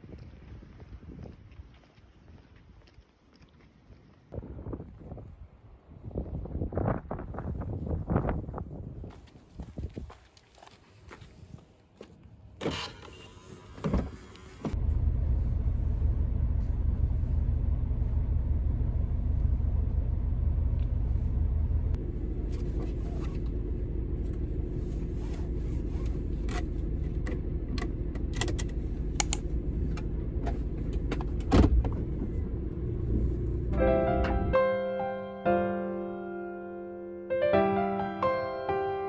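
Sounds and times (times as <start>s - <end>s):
car rumbling on the move: 13.6s - 34.8s.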